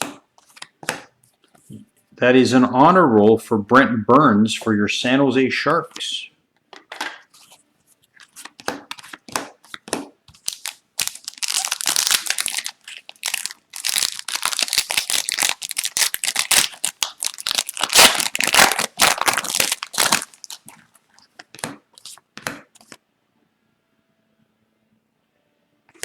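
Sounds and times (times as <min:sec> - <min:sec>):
foil wrapper crinkling and tearing: 0:10.4 - 0:21.3.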